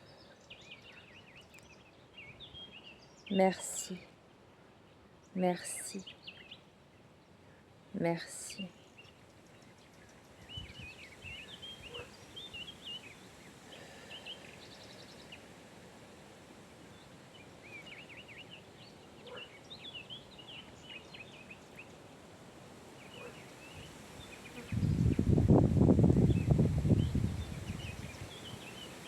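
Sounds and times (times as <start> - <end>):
wind in leaves: 0.0 - 29.0
birds chirping: 23.0 - 25.4.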